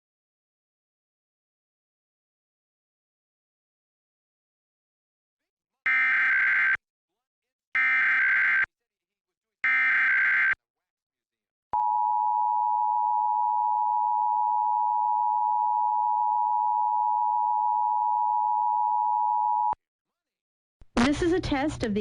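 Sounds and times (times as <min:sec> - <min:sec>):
two-tone alarm: 0:05.9 - 0:06.8, 0:07.8 - 0:08.7, 0:09.6 - 0:10.6, 0:11.8 - 0:19.8.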